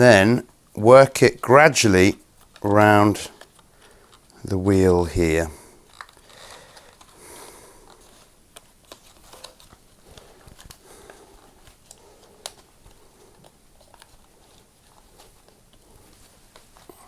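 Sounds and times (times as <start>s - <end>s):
small clicks and rubbing: 2.4s - 4.4s, 5.8s - 7.2s, 7.8s - 16.9s.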